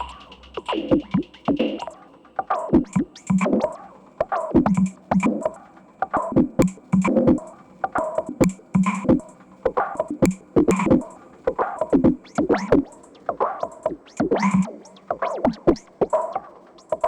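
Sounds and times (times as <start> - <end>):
electronic percussion rhythm: 0.0 - 17.0.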